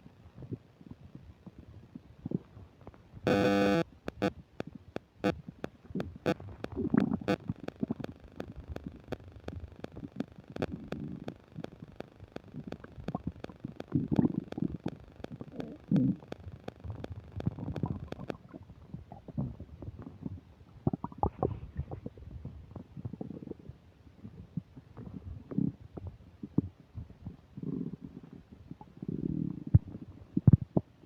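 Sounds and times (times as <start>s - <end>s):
stomach gurgling and rumbling: 0.0s - 4.3s, 5.2s - 31.0s
microphone static ticking: 0.3s - 18.8s
loud buzz: 3.3s - 4.3s.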